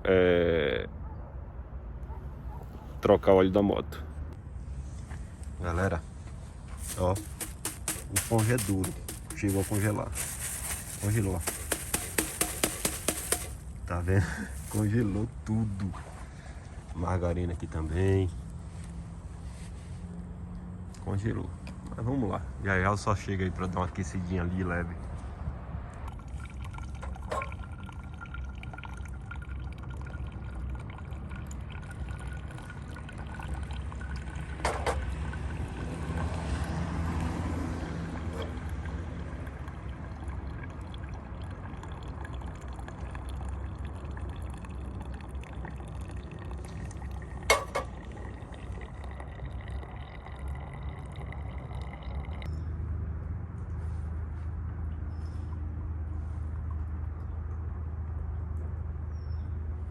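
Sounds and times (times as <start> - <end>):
liquid pouring into container: 6.8 - 15.2, 26.1 - 36.8, 38.4 - 52.5.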